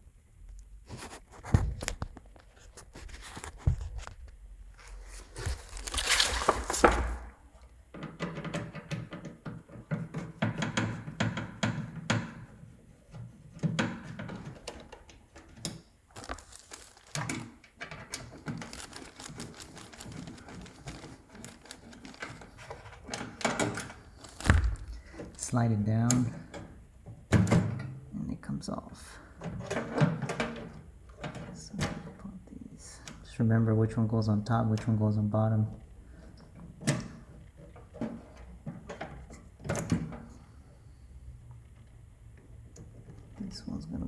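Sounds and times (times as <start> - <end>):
plastic scraping: 0.9 - 7.4, 16.1 - 25.5
plastic parts clicking and knocking: 7.9 - 25.5, 29.4 - 32.2.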